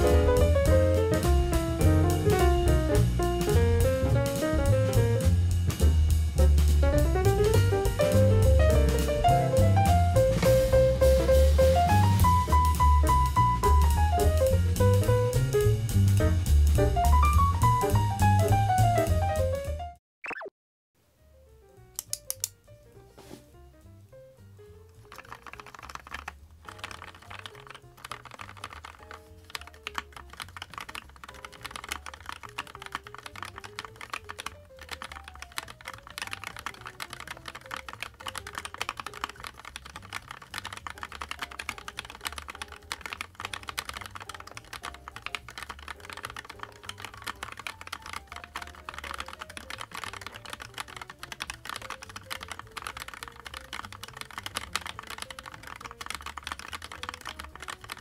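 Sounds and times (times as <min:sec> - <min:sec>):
background music: 0:00.0 - 0:20.0, 0:21.3 - 0:58.0
mechanical keyboard typing: 0:25.0 - 0:58.0.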